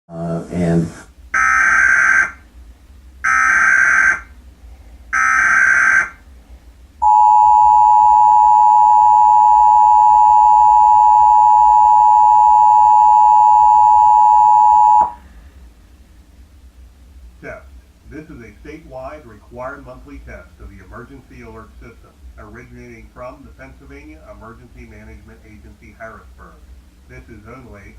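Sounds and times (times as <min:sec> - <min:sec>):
digital data screech: 0:01.4 - 0:02.4, 0:03.3 - 0:04.2, 0:05.2 - 0:06.2
two-tone attention signal: 0:07.0 - 0:15.2.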